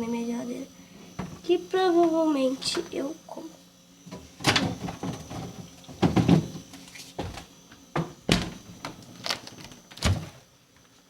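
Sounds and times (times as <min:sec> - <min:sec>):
knocks and thumps: 0:01.2 - 0:01.4, 0:04.1 - 0:06.6, 0:07.2 - 0:09.0
freezer door opening: 0:04.2 - 0:06.6, 0:07.2 - 0:10.4.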